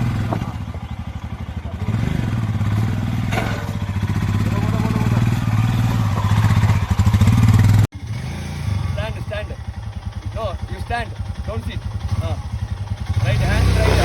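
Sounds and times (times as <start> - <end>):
motorcycle engine thumping: 0.0 - 7.9.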